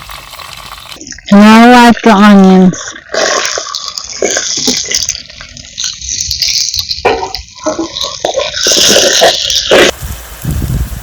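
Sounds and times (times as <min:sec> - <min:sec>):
onions sizzling in oil: 0:06.6 - 0:11.0.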